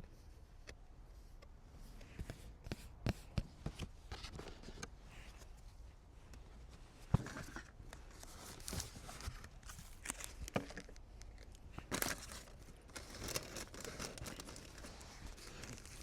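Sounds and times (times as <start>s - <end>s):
card packaging tearing and crinkling: 11.8s - 16.0s.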